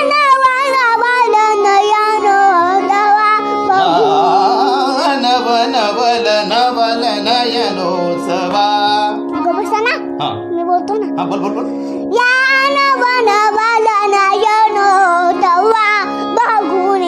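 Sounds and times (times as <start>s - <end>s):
musical accompaniment: 0.0s - 17.0s
held drone: 2.3s - 6.0s
person singing ornamented melody: 3.7s - 9.4s.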